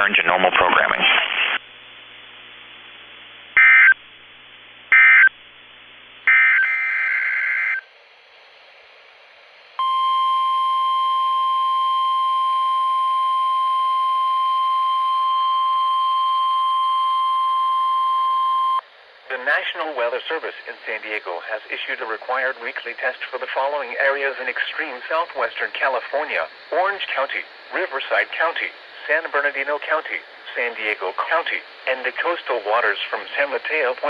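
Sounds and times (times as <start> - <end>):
steady warning alarm tone: 6.3 - 7.8.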